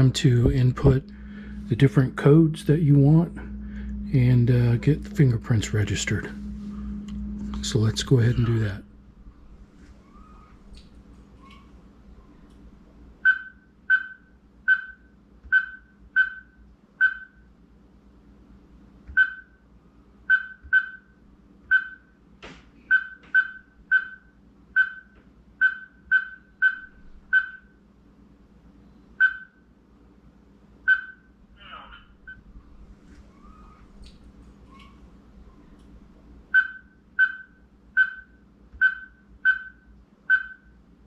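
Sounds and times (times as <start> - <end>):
keypad beeps: 13.2 - 17.4, 19.2 - 19.5, 20.3 - 21.0, 21.7 - 22.0, 22.9 - 24.2, 24.8 - 27.7, 29.2 - 29.6, 30.9 - 31.2, 36.6 - 40.7.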